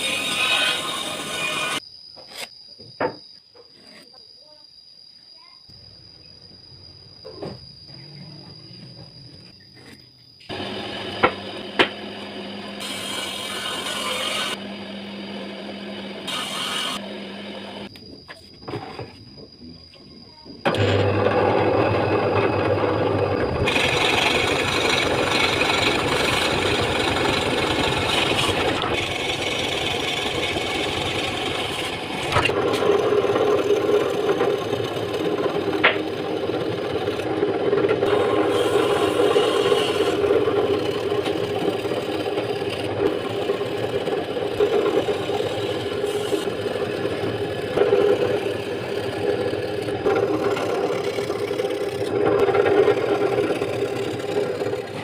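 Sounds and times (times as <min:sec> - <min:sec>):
drum sander sanding wood: 0:10.5 - 0:17.8, 0:20.8 - 0:55.0.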